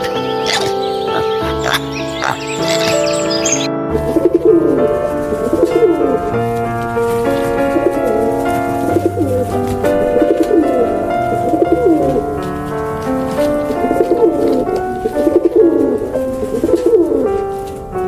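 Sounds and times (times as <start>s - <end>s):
low warbling bird calls: 0.0s - 6.7s
background music sustained notes: 0.0s - 18.0s.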